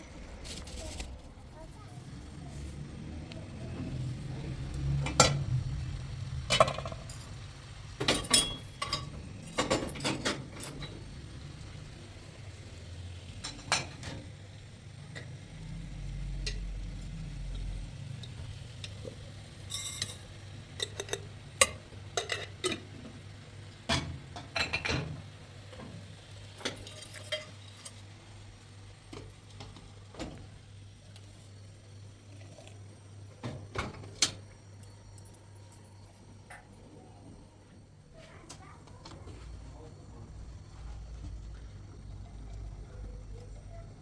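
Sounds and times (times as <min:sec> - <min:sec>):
dishes and utensils clinking: 0:06.4 - 0:11.1, 0:18.8 - 0:23.1, 0:23.9 - 0:25.9, 0:26.6 - 0:28.1.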